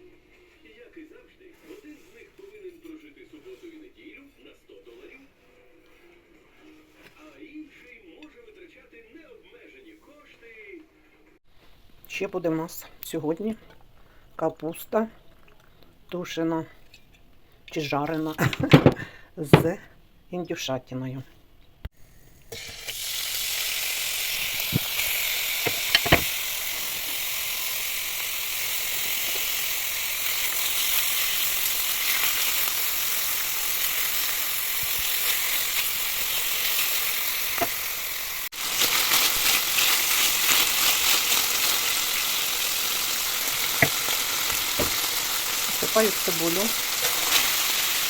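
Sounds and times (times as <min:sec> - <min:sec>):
food sizzling in hot oil: 0:22.0 - 0:48.0.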